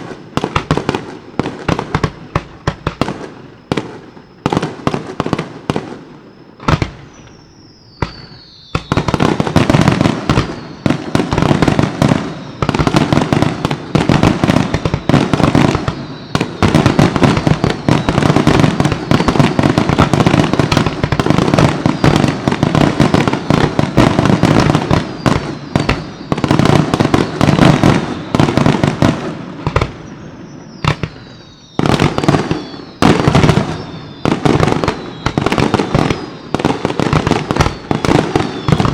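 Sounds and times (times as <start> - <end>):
falling firework whistle: 0.0 - 38.9
fireworks bangs: 0.0 - 38.9
fireworks crackling: 0.0 - 38.9.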